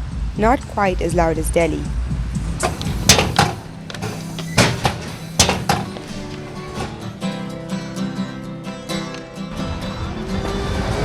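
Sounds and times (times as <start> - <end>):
sharp percussive hits: 2.4 - 7.1.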